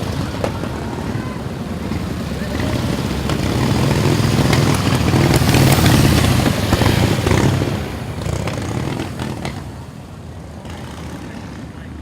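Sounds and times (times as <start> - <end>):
motorcycle engine running: 2.0 - 9.7.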